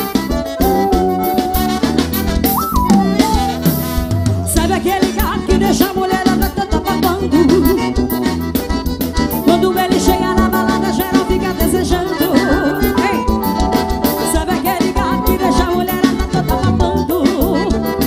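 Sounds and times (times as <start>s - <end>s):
accordion: 0.0s - 18.0s
steady percussion beat: 0.4s - 4.6s
person singing: 2.9s - 8.4s, 9.4s - 18.0s.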